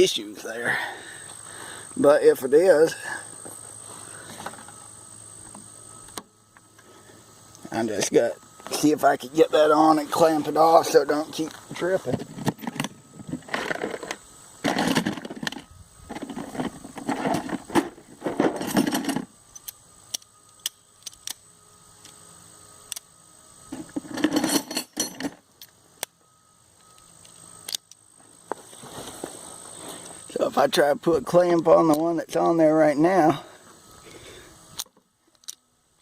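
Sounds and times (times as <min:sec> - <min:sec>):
tools rattling and rustling: 0:11.3 - 0:19.3, 0:23.7 - 0:25.7
metal parts clinking: 0:12.6 - 0:19.7, 0:23.7 - 0:25.8.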